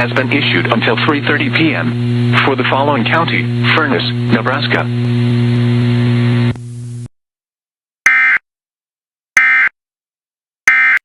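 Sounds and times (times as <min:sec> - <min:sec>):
radio hum and hiss: 0:00.0 - 0:07.1.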